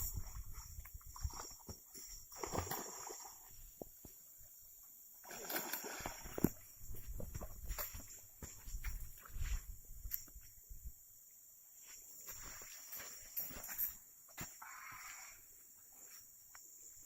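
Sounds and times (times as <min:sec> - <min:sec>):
water splashing and sloshing: 0:00.0 - 0:03.7, 0:05.2 - 0:09.6.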